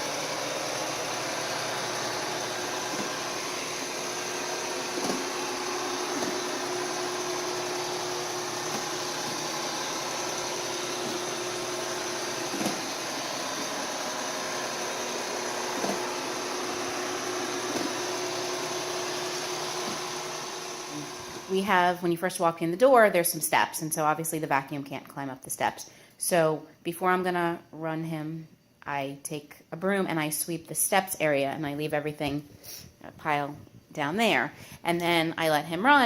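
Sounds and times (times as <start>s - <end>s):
robot vacuum whirring: 0.0s - 21.6s.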